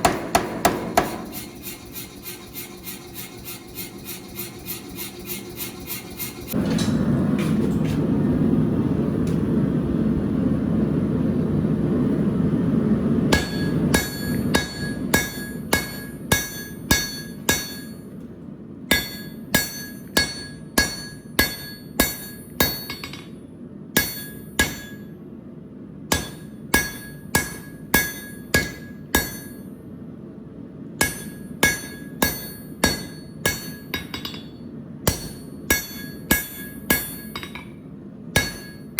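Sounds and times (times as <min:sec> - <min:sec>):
hammer ringing on anvil: 0:13.4 - 0:18.1, 0:18.9 - 0:23.4, 0:24.0 - 0:25.1, 0:26.1 - 0:29.7, 0:31.0 - 0:37.8, 0:38.4 - 0:38.9.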